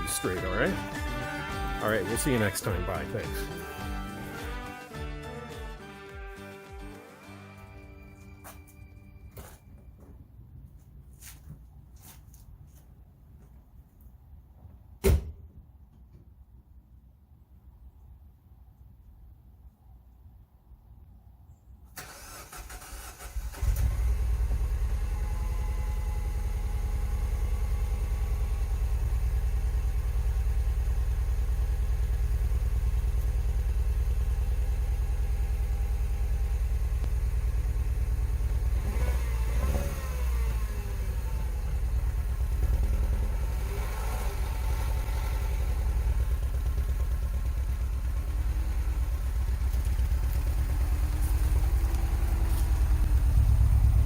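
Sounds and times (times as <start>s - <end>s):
car engine starting and running: 0.0s - 6.1s, 21.9s - 54.0s.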